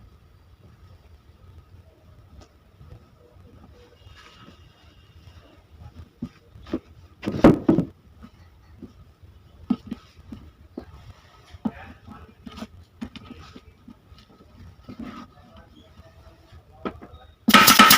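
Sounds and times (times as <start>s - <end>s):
knocks and clatters: 16.9s - 17.9s.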